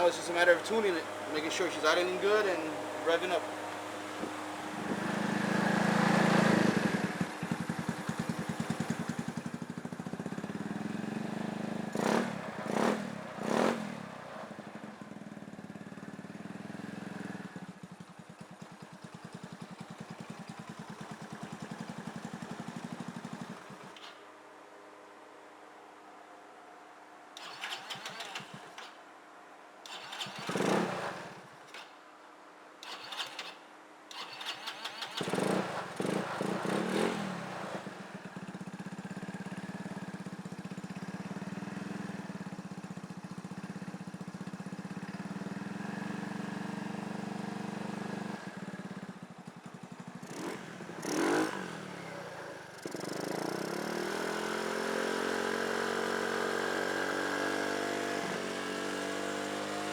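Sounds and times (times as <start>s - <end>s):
scooter engine cranking: 0.0s - 10.9s, 11.9s - 14.8s, 19.5s - 24.2s, 27.4s - 29.0s, 29.8s - 32.0s, 32.8s - 41.4s, 49.6s - 58.6s
scooter engine idling and revving: 0.0s - 24.3s, 27.4s - 29.0s, 29.8s - 32.1s, 32.8s - 59.9s.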